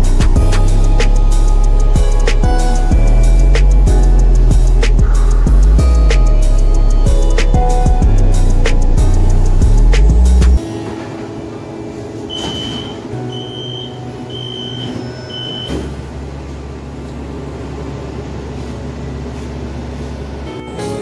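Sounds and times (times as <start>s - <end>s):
train doors shutting knock: 12.2s - 16.2s
short high door-warning beeps: 12.3s - 16.0s
low hum of train drive: 14.0s - 21.0s.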